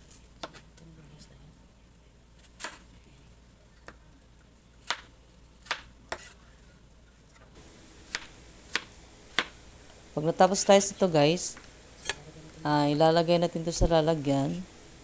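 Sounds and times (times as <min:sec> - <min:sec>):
knife tapping on cutting board: 0:08.1 - 0:09.6.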